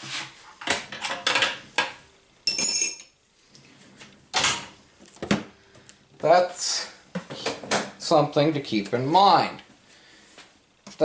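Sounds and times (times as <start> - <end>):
sharp ringing metal clink: 2.5 - 3.2.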